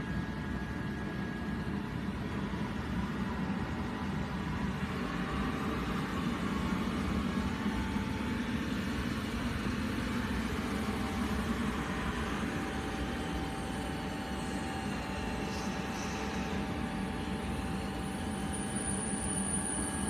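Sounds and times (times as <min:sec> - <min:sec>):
faint high steady whine: 0:00.0 - 0:20.0
industrial machinery low drone: 0:00.0 - 0:20.0.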